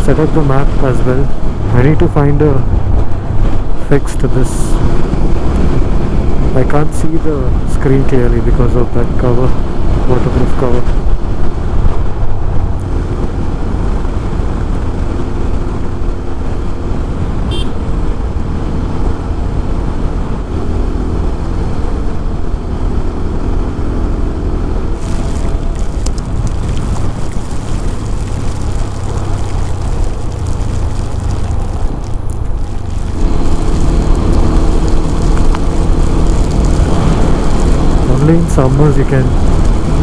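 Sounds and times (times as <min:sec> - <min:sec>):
motorcycle engine running: 0:10.9 - 0:40.0.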